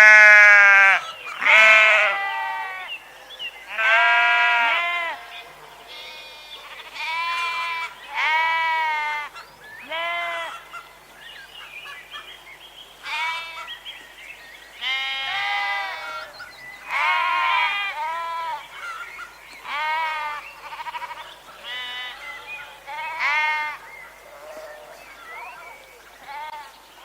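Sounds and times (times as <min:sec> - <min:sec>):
sheep bleating: 0:00.0 - 0:03.0, 0:03.7 - 0:10.7, 0:13.0 - 0:13.7, 0:14.8 - 0:16.3, 0:16.9 - 0:18.7, 0:19.6 - 0:23.8, 0:26.3 - 0:26.7.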